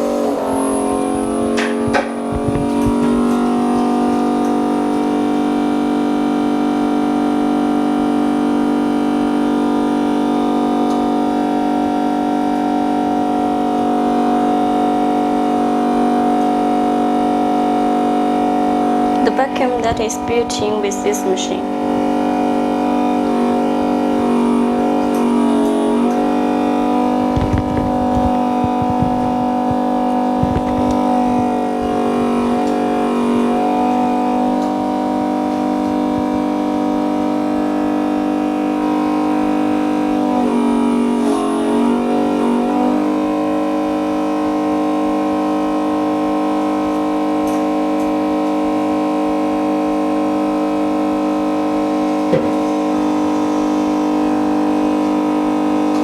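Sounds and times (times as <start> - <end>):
vacuum pump humming: 0.0 - 56.0
low knocks: 27.3 - 31.6.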